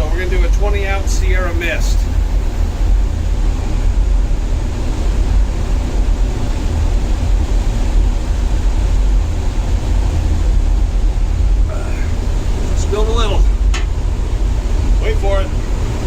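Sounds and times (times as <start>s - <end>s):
sea and ship noise: 0.0s - 16.0s
wind buffeting microphone: 0.0s - 16.0s.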